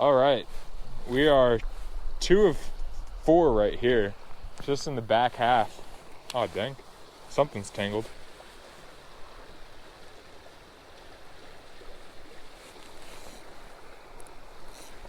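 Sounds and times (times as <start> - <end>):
creek water flowing: 0.0 - 15.0.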